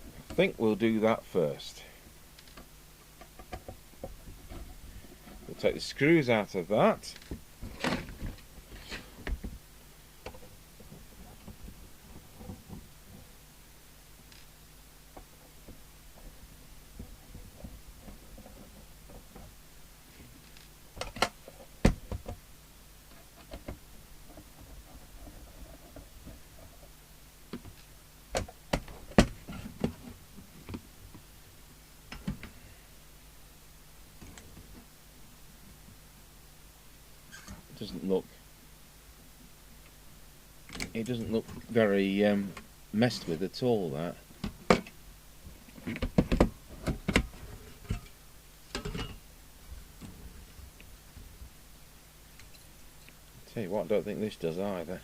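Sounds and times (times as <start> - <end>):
low steady hum: 0.0 - 55.0
radio parts clicking and knocking: 2.3 - 5.6, 20.4 - 22.5, 23.1 - 31.3, 45.6 - 49.3.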